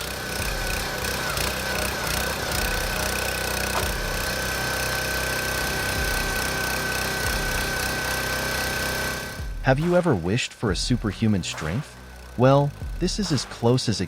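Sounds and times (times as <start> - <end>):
high whine: 0.0 - 14.0
log splitter engine running: 0.0 - 14.0.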